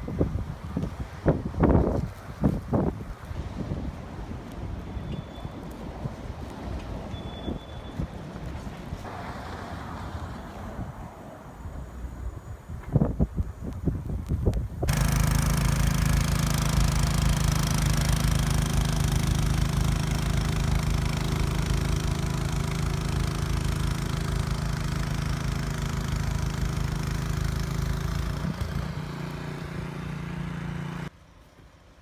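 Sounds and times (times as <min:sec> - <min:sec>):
engine running with low hum: 0:09.0 - 0:31.7.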